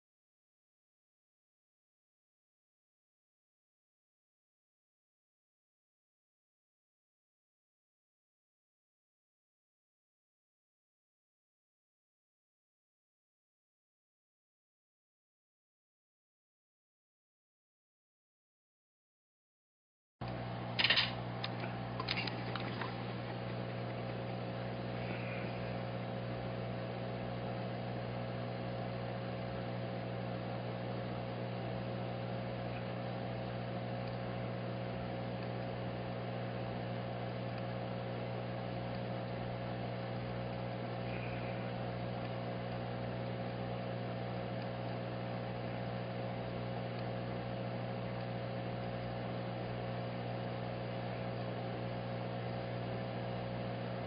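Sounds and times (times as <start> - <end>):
electrical hum with hiss: 20.2 - 54.0.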